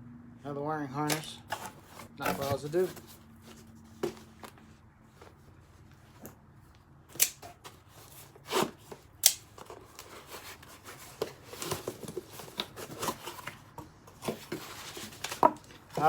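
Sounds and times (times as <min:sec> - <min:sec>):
packaging clacks: 0:01.1 - 0:04.3, 0:07.2 - 0:16.0
packaging crinkling and rustling: 0:01.1 - 0:04.6, 0:07.4 - 0:16.0.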